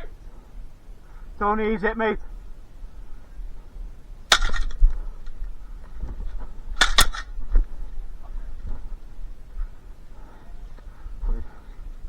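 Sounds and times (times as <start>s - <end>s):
airsoft gunfire cracks: 4.3s - 4.8s, 6.8s - 7.3s
gun handling noise: 4.3s - 5.6s, 6.7s - 7.4s.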